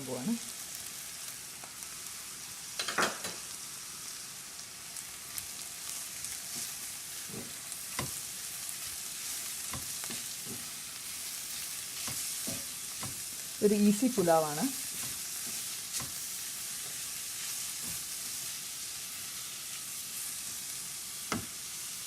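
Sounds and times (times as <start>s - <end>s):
vegetables sizzling in oil: 0.0s - 22.0s
spoon scraping and knocking pan: 6.5s - 8.2s, 9.0s - 17.1s, 17.7s - 18.2s, 21.3s - 21.6s.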